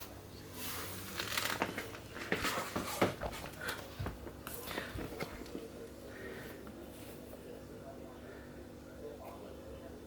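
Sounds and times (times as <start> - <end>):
crinkling and rustling: 0.9 - 5.7.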